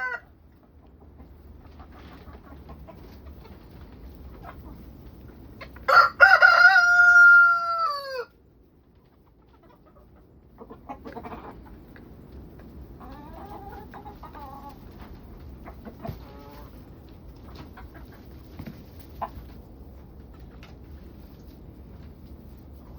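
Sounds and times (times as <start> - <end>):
rooster crowing: 0.0 - 0.2, 5.9 - 8.3
chickens clucking: 0.0 - 22.9.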